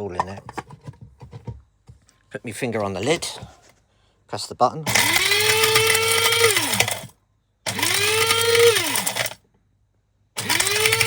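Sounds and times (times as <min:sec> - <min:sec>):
electric coffee grinder whining: 0:04.9 - 0:07.1, 0:07.7 - 0:09.4, 0:10.4 - 0:11.0.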